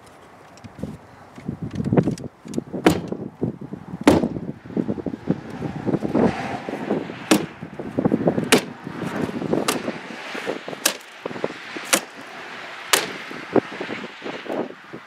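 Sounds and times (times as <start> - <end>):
rustling and tapping: 0.0 - 3.2.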